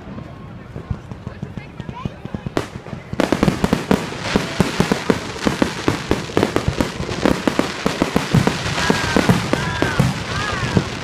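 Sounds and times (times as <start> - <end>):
fireworks bangs and pops: 0.0 - 11.0.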